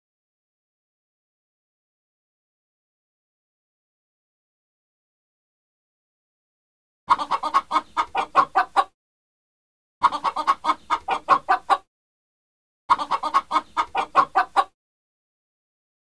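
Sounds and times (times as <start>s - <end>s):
chicken clucking: 7.1s - 9.0s, 10.0s - 11.9s, 12.9s - 14.8s.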